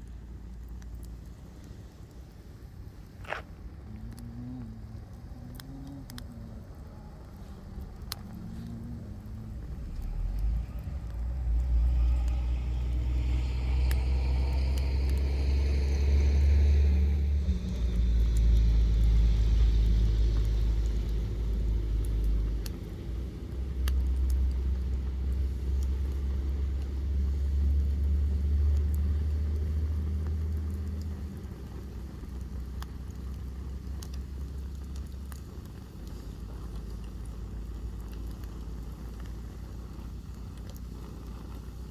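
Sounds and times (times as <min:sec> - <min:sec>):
firewood crackling and popping: 0:00.0 - 0:41.9
loud low rumble: 0:03.6 - 0:32.4.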